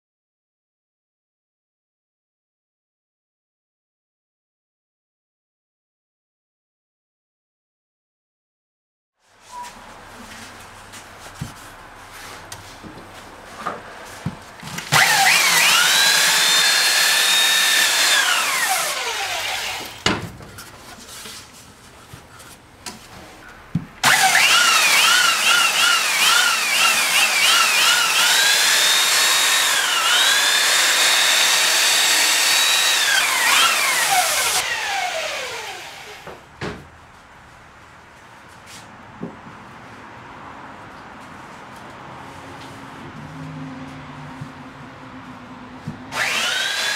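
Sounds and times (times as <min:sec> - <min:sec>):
power tool cutting wood: 0:14.8 - 0:20.1, 0:24.0 - 0:36.4, 0:46.1 - 0:46.9
power tool motor whining: 0:14.9 - 0:20.1, 0:24.0 - 0:36.3, 0:46.1 - 0:46.9.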